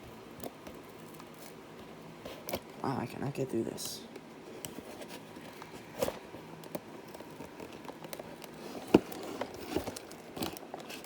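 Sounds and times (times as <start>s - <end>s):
scraping and clicking on cardboard box: 4.6s - 11.0s.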